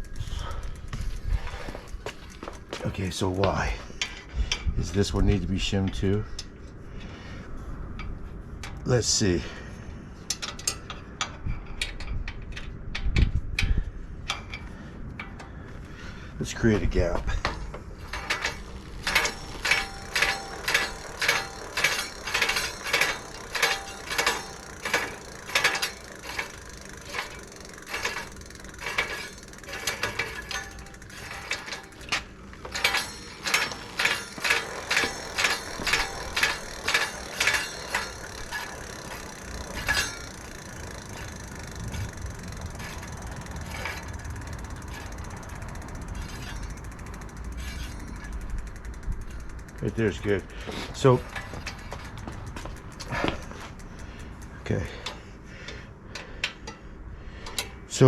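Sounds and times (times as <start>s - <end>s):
ratchet wrench clicking: 17.4s - 56.8s.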